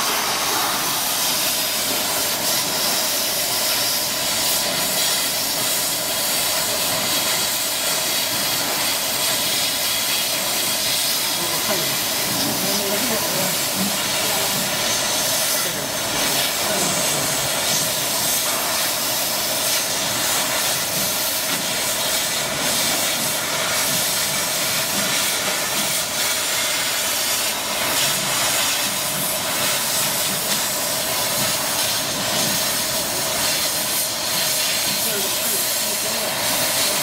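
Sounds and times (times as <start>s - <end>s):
laser cutting machine hissing: 0.0s - 37.0s.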